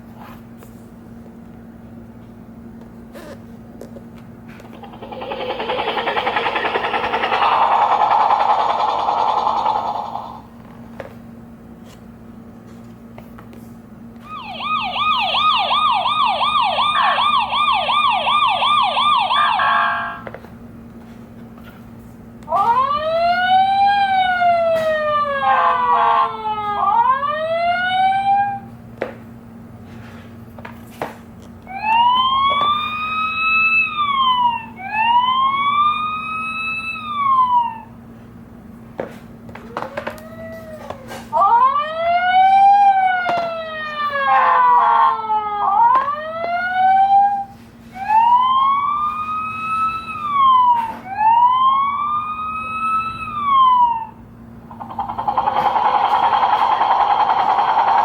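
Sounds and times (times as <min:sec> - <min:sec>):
steady low hum: 0:00.0 - 0:27.6, 0:51.0 - 0:58.0
sirens wailing: 0:04.6 - 0:10.5, 0:14.2 - 0:20.3, 0:22.4 - 0:28.7, 0:31.7 - 0:38.0, 0:39.5 - 0:58.0.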